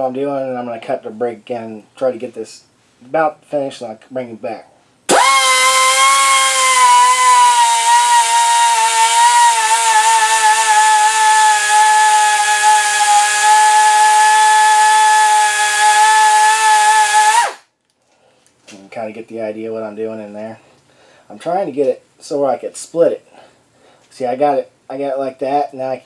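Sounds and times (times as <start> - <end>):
die grinder grinding steel: 5.1 - 17.6.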